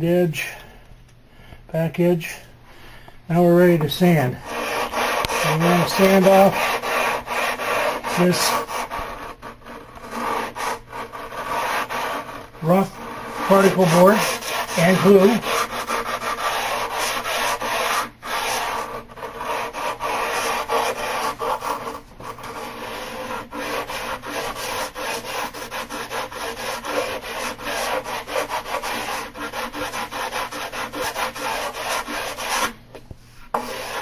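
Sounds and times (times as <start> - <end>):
sandpaper rubbing on board edge: 3.8 - 32.8, 33.5 - 34.0.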